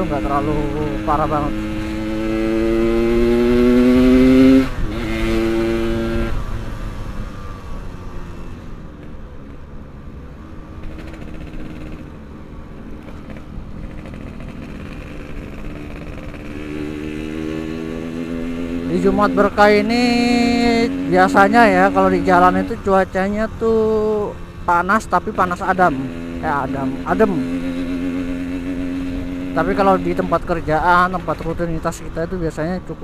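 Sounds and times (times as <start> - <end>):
motorcycle engine revving: 0.0 - 9.2, 10.7 - 33.0.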